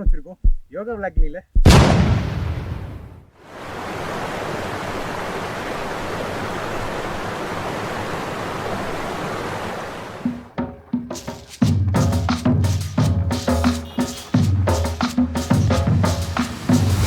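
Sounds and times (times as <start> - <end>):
rushing water: 3.4 - 17.0.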